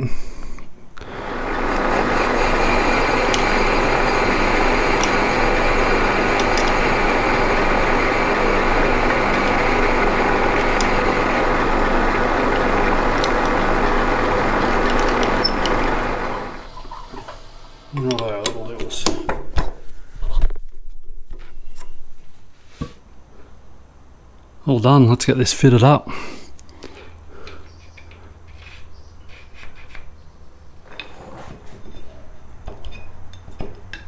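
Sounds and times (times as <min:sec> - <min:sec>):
metal lathe running: 0:01.0 - 0:18.2.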